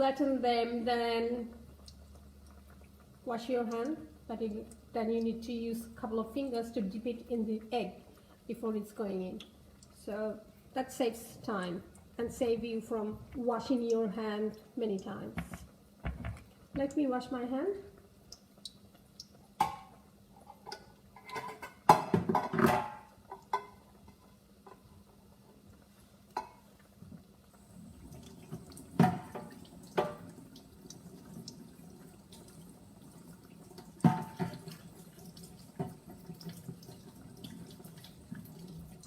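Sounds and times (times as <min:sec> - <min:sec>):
tap running into sink: 0:15.3 - 0:16.9, 0:28.2 - 0:31.6, 0:33.8 - 0:38.7
sharp knocks and clatters: 0:15.4 - 0:16.5.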